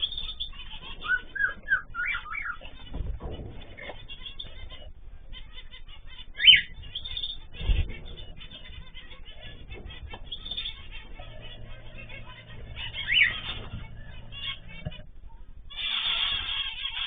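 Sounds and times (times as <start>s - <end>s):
small birds chirping: 0.0s - 17.0s
low thumps: 6.6s - 15.7s.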